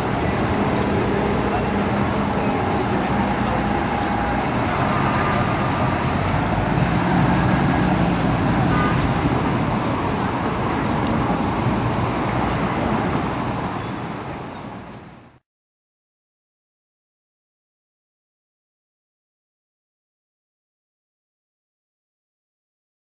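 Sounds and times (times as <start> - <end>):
dense traffic noise: 0.0 - 15.4
engine hum: 0.0 - 15.4.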